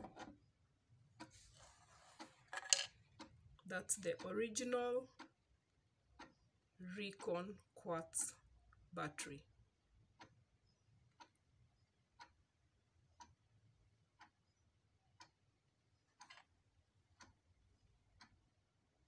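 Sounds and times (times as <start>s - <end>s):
wall clock ticking: 0.0s - 0.5s, 1.1s - 8.4s, 10.0s - 19.0s.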